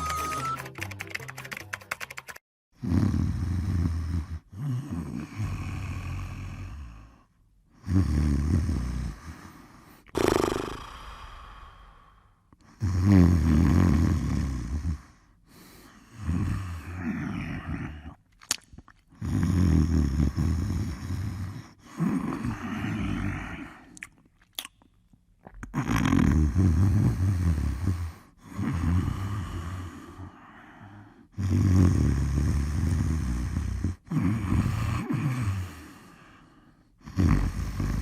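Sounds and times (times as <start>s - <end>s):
high whistle: 0.0s - 0.7s
person snoring: 2.8s - 18.2s, 19.2s - 24.0s, 25.7s - 38.0s
quiet breath: 3.4s - 10.1s, 10.8s - 12.8s, 14.6s - 18.2s, 27.0s - 31.4s, 32.2s - 38.0s.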